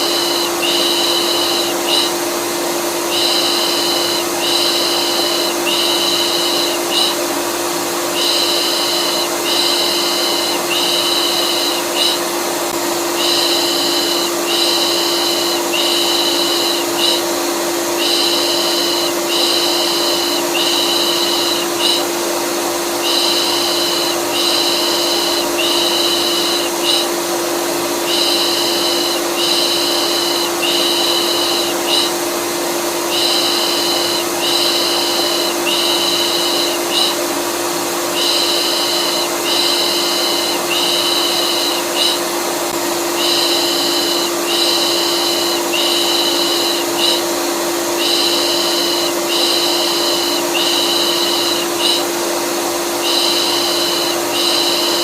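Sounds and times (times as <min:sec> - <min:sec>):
vacuum cleaner running: 0:00.0 - 0:55.0
rhythmic shushing: 0:03.0 - 0:07.3, 0:08.0 - 0:12.3, 0:13.1 - 0:22.1, 0:22.9 - 0:27.2.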